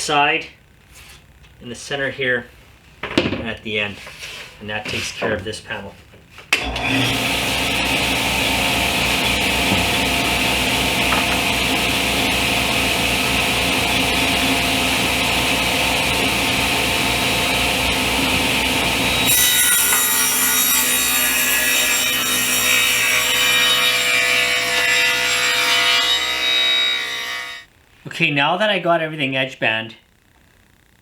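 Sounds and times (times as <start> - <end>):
power tool cutting wood: 6.6 - 27.7
hissy machine noise: 7.2 - 19.3.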